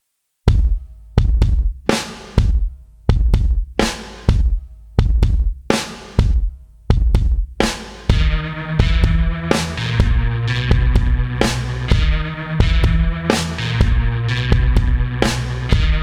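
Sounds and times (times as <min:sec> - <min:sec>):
drum-kit beat: 0:00.5 - 0:16.0
sustained chords: 0:08.1 - 0:16.0.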